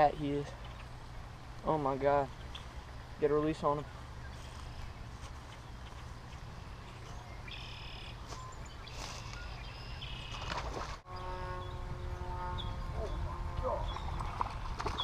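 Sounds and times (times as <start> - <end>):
birds chirping: 0.0 - 15.0
wind rumble on microphone: 8.5 - 15.0.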